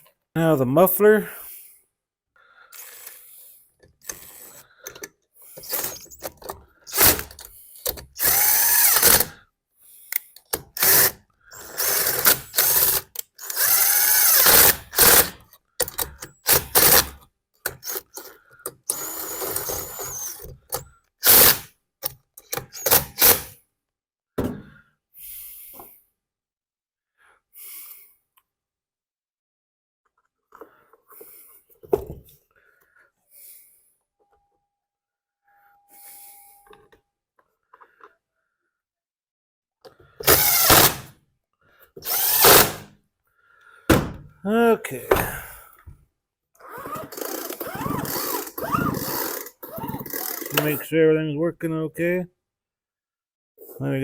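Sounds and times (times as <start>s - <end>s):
cordless drill whining: 2.8s - 3.4s, 4.0s - 9.4s, 10.6s - 21.7s, 22.4s - 23.5s, 40.2s - 41.1s, 42.0s - 42.9s, 46.6s - 50.8s
clicks of parts: 20.4s - 23.4s.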